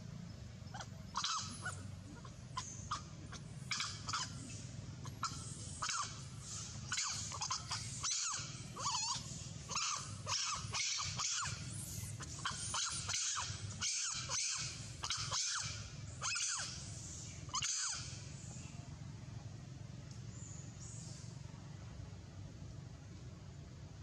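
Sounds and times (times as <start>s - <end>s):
monkey screaming: 0.7s - 4.4s, 5.0s - 16.8s, 17.5s - 18.1s.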